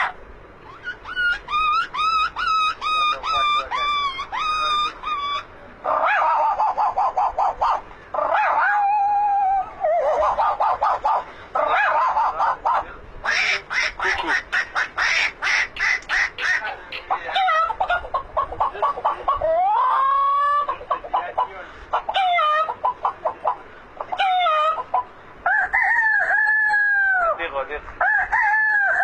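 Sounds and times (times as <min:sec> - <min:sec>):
duck-like quacking: 0:12.3 - 0:17.4.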